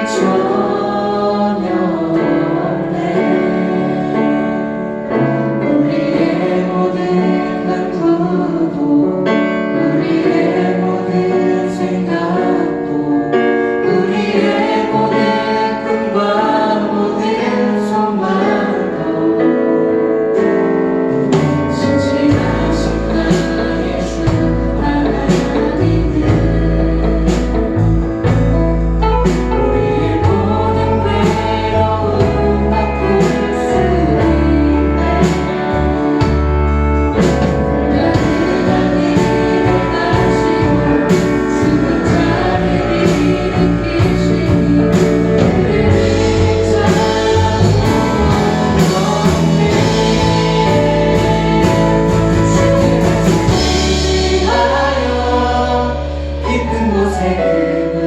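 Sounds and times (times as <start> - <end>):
choir singing worship song: 0.0 - 28.5, 29.2 - 58.0
band playing: 0.0 - 58.0
drums: 0.0 - 58.0
bass line: 21.1 - 58.0.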